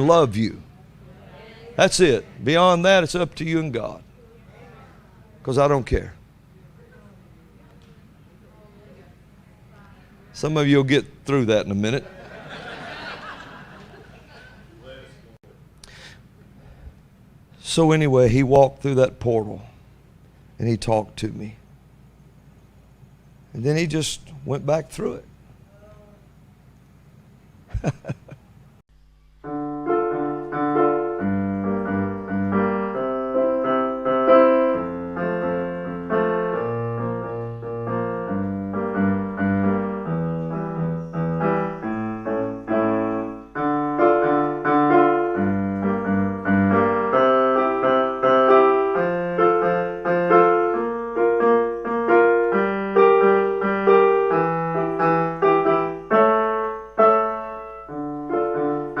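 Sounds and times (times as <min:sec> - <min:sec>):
piano chords over bass: 0:29.3 - 0:59.0.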